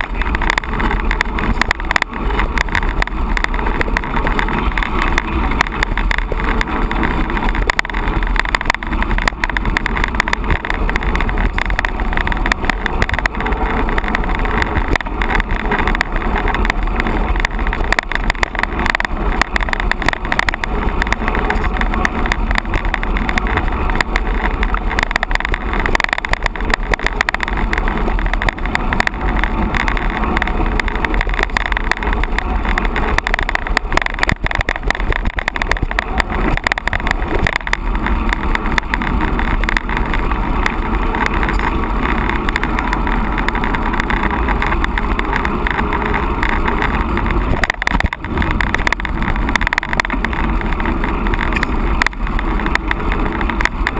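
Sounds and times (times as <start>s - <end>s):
bike knocks and rattles: 0.0s - 53.9s
wind rush on microphone: 0.0s - 53.9s.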